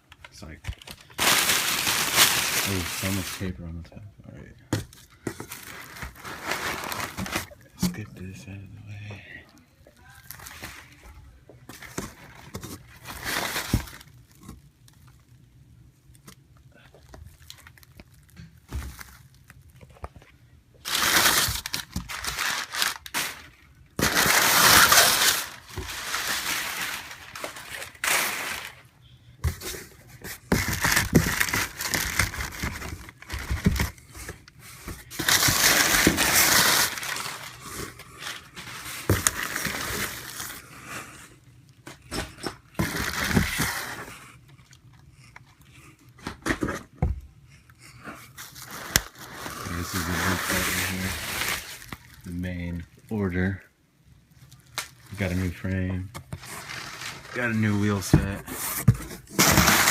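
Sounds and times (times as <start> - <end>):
packing paper crinkling: 0.4 - 3.7, 5.2 - 8.1, 11.7 - 15.3, 17.0 - 20.0, 20.8 - 40.7, 42.8 - 44.1, 48.3 - 53.3, 54.3 - 59.9.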